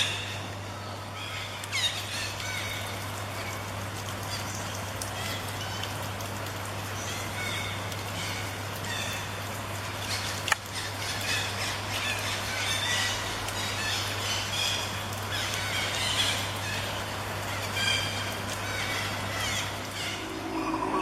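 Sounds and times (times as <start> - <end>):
parrots chirping and squawking: 18.7 - 21.0
steady low hum: 19.2 - 21.0.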